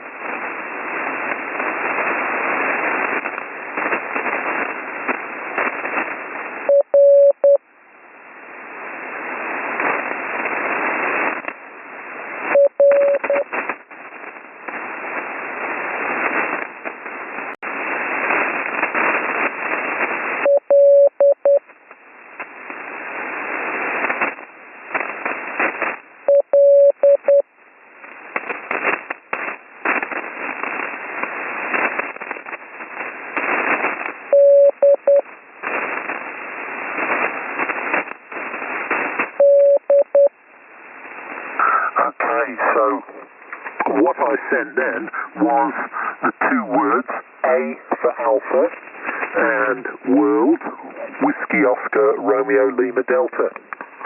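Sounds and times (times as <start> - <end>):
radio static with crackles: 0.0 - 54.0
morse code tone: 6.7 - 7.6, 12.6 - 13.4, 20.5 - 21.6, 26.3 - 27.4, 34.4 - 35.2, 39.4 - 40.3.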